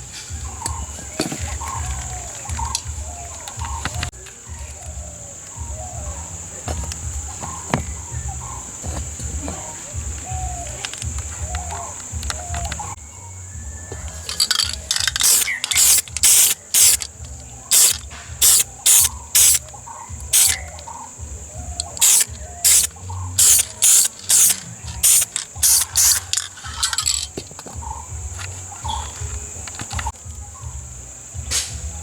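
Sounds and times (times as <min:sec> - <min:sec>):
aerosol spray can hissing: 0:14.3 - 0:19.7, 0:20.3 - 0:20.8, 0:21.8 - 0:27.3.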